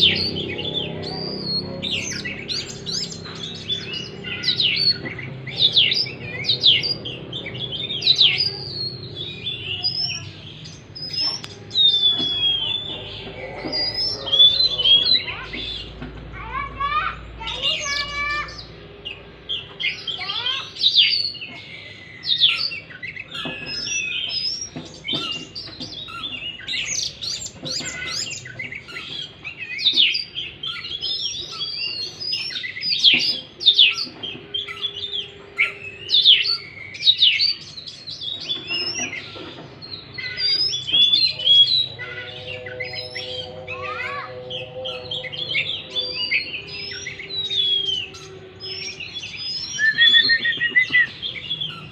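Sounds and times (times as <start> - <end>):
bird singing whistles and trills: 0.0 - 16.0, 17.4 - 51.9.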